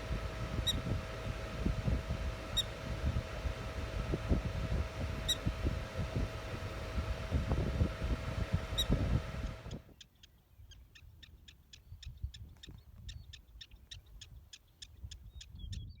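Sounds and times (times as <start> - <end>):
low rumble on microphone: 0.0 - 9.8.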